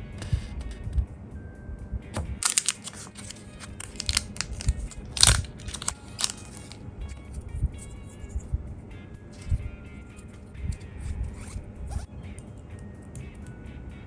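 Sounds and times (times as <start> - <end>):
thin plastic crinkling: 2.2 - 8.5.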